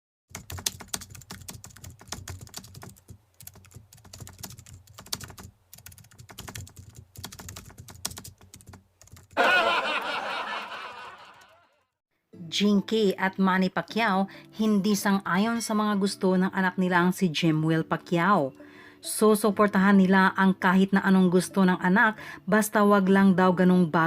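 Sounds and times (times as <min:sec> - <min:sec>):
keyboard typing: 0:00.3 - 0:09.4.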